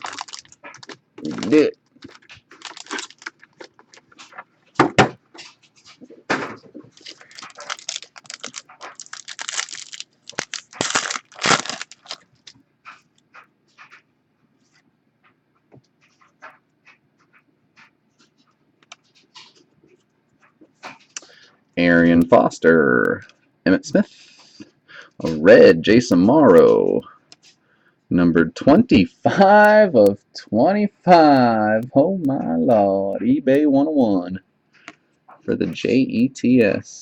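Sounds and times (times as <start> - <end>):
foil wrappers tearing and crinkling: 0.0 - 4.3, 6.9 - 12.6.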